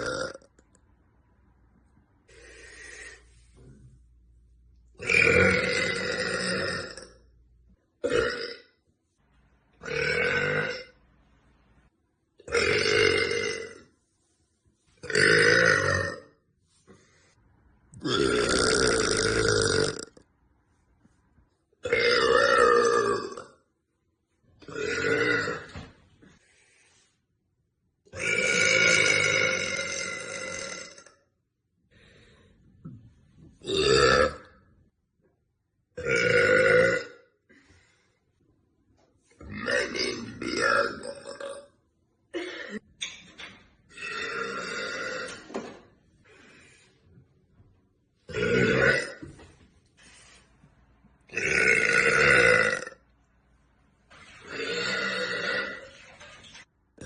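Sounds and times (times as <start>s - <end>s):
woman burping: 0.0s - 0.5s, 5.0s - 7.2s, 8.0s - 8.7s, 9.8s - 11.0s, 12.4s - 13.9s, 18.0s - 20.2s, 24.6s - 25.8s, 39.5s - 43.1s, 43.9s - 45.7s, 48.3s - 49.4s, 51.3s - 53.0s, 54.4s - 56.0s.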